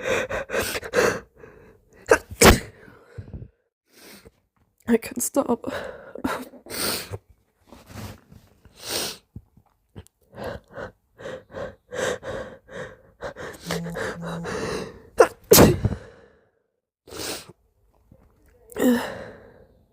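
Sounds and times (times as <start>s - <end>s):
person gasping breaths: 10.3s - 16.5s
person sneezing: 15.2s - 16.0s.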